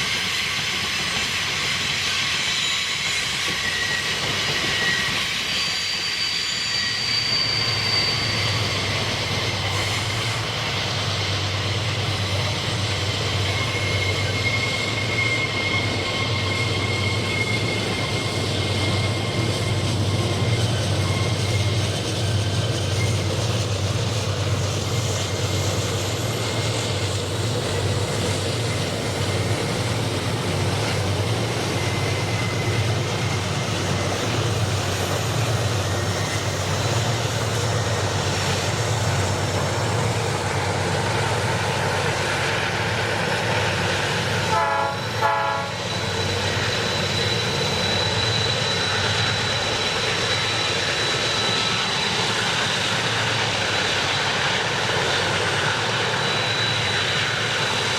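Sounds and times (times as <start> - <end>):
freight train rumbling: 0.0 - 57.9
high steady squeal: 0.0 - 57.9
train horn toots: 44.5 - 46.0.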